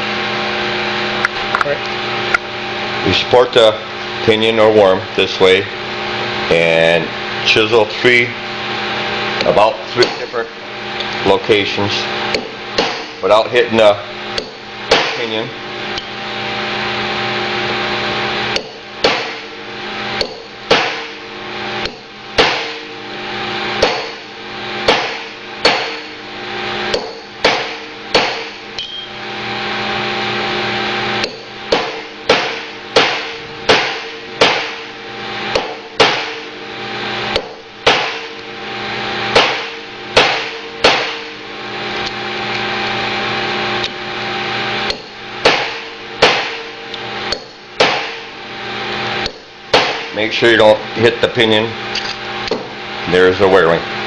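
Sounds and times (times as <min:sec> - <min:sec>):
hammer striking chisel on metal: 0:10.0 - 0:10.4, 0:12.3 - 0:13.2, 0:14.4 - 0:15.3, 0:18.5 - 0:19.5, 0:20.2 - 0:21.2, 0:21.8 - 0:22.9, 0:23.8 - 0:24.2, 0:24.9 - 0:26.2, 0:26.9 - 0:29.1, 0:31.2 - 0:34.9, 0:35.5 - 0:36.5, 0:37.3 - 0:38.4, 0:39.4 - 0:41.4, 0:44.9 - 0:48.2, 0:49.2 - 0:50.1.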